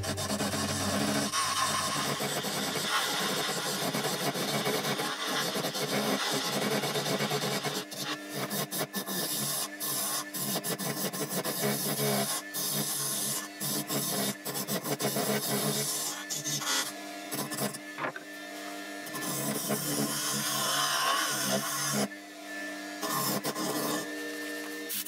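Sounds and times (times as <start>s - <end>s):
power tool motor hum: 0.0s - 25.0s
wood scraping and rasping: 0.0s - 25.0s.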